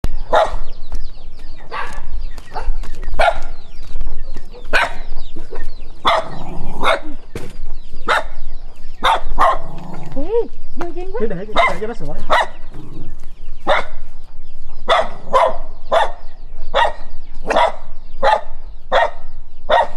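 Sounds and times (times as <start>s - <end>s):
dog barking: 0.3s - 0.7s, 1.7s - 3.6s, 4.7s - 5.1s, 6.0s - 7.1s, 8.0s - 8.4s, 9.0s - 9.8s, 11.6s - 12.6s, 13.6s - 14.0s, 14.8s - 19.9s.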